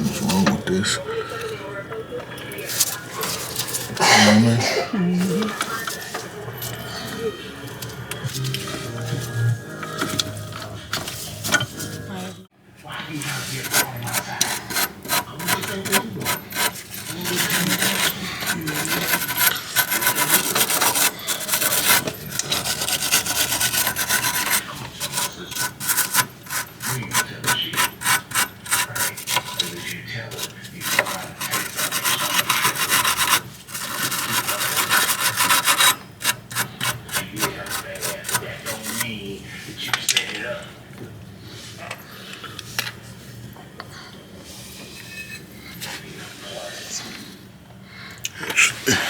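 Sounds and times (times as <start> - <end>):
scrubbing rust off metal: 13.2 - 39.3.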